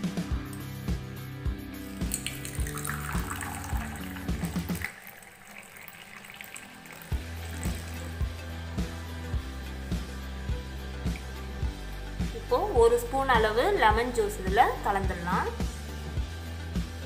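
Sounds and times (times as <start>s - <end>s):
background music with steady beat: 0.0s - 17.0s
tea pouring into a cup: 1.8s - 11.9s.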